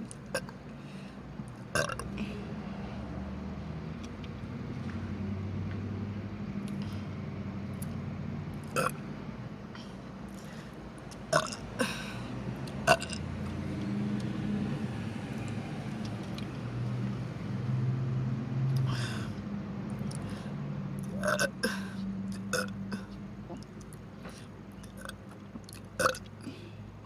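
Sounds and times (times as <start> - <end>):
woman burping: 1.7 - 2.1, 11.3 - 12.2, 21.1 - 23.6, 26.0 - 26.2.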